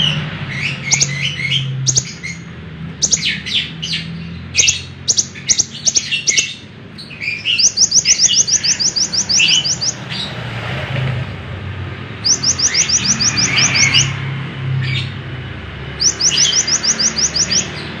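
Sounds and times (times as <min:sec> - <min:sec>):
sunbird chirping and trilling: 0:00.0 - 0:10.5, 0:11.8 - 0:18.0.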